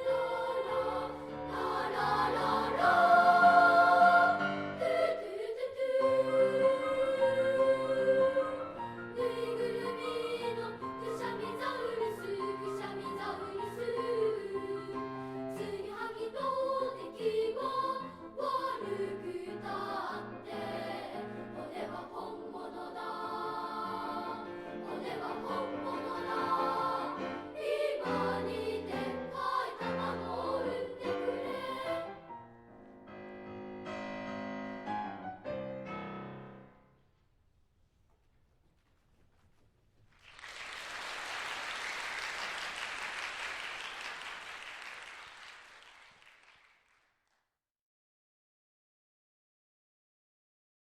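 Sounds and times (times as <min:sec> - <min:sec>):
children's choir singing: 0:00.0 - 0:32.4.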